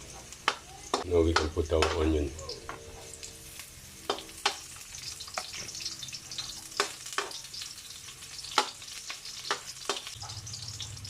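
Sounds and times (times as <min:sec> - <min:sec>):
vegetables sizzling in hot oil: 0:00.0 - 0:11.0
utensil knocking against pan: 0:00.4 - 0:02.1.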